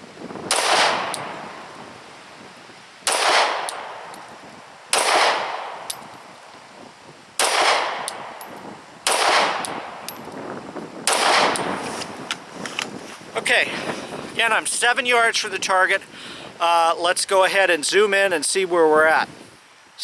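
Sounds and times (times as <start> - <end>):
pistol shots echoing: 0.5 - 1.7, 3.0 - 4.2, 4.9 - 6.2, 7.4 - 10.2, 11.0 - 11.8.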